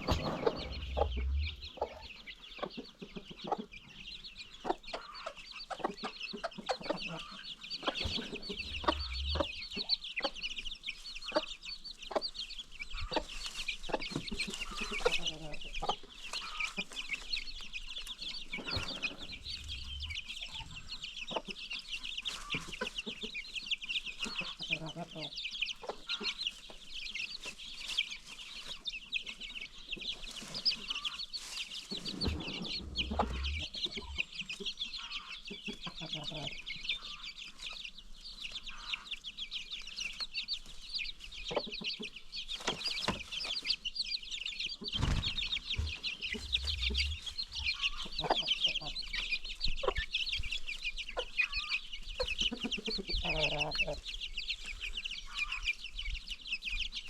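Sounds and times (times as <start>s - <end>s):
brief low knock: 0.0s - 2.1s, 8.0s - 9.8s, 18.6s - 20.8s, 31.9s - 34.3s, 45.0s - 48.0s
hens clucking: 0.0s - 10.4s, 12.9s - 17.3s, 18.0s - 21.6s, 22.3s - 26.8s, 31.9s - 37.2s, 44.9s - 50.0s, 51.2s - 54.0s
chicks peeping: 0.0s - 57.0s.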